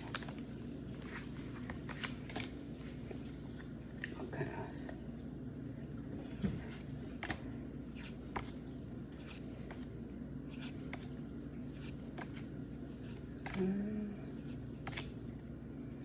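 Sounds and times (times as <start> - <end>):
trading cards flipped by hand: 0.0 - 3.7, 7.1 - 8.6, 9.2 - 13.6, 14.8 - 15.2.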